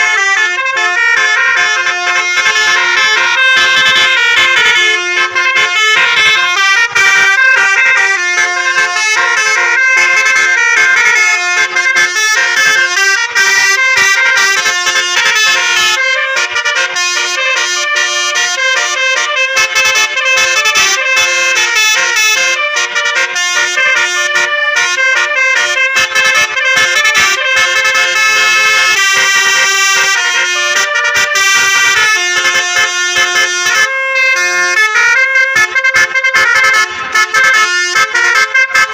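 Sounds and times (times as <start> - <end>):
multi-tone bus horn melody: 0.0 - 38.9.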